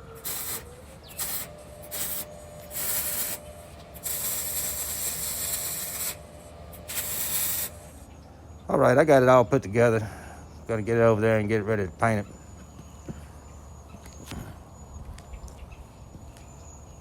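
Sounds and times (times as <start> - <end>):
tool grinding steel: 0.0 - 8.0.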